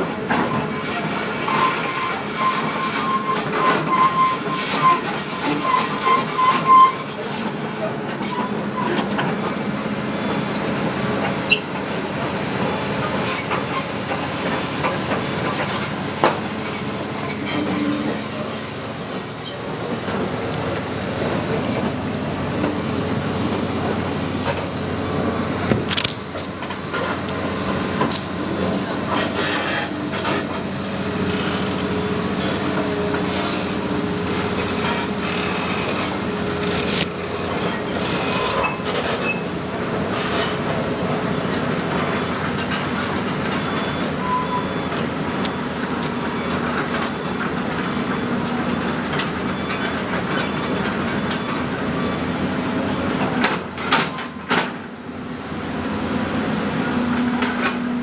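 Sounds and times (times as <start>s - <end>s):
excavator diesel engine running: 0.0s - 58.0s.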